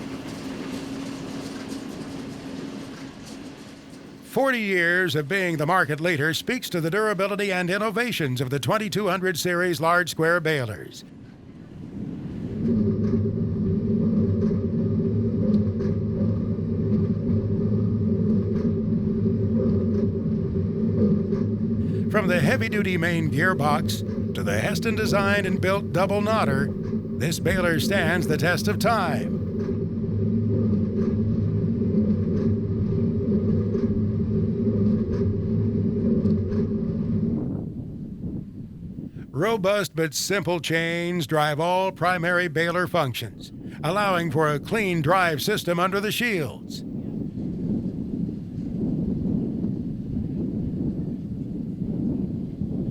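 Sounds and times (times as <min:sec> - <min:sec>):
tractor engine drone: 0:00.0 - 0:48.2.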